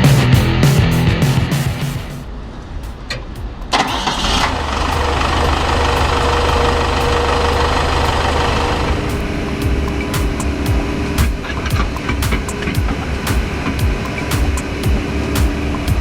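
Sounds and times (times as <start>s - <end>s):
diesel engine starting and idling: 3.7s - 9.5s.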